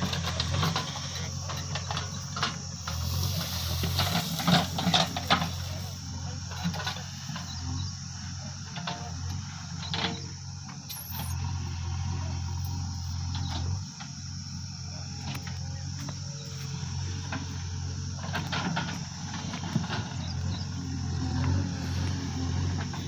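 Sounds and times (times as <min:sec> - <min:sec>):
diesel engine running: 0:00.0 - 0:23.0
high-pitched drone: 0:10.9 - 0:12.1.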